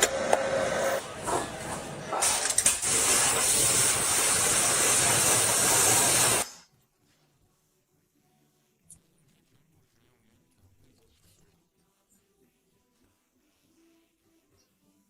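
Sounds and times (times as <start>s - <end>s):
pressurized air hissing: 2.8s - 6.6s.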